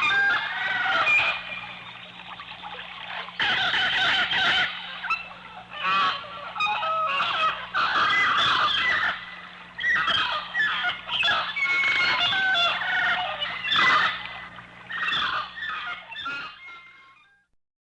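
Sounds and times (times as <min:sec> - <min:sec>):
jungle birds chattering and honking: 0:00.0 - 0:17.2.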